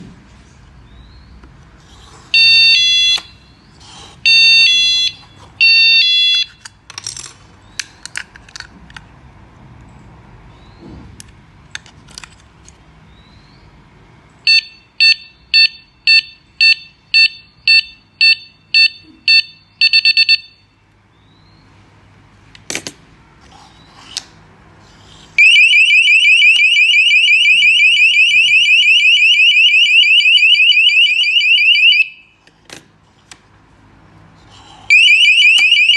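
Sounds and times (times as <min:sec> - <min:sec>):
multi-tone beeping bursts: 0:02.4 - 0:03.4, 0:04.3 - 0:06.5, 0:14.5 - 0:20.6
pulsing high-pitched alarm siren: 0:25.4 - 0:32.2, 0:34.9 - 0:35.9.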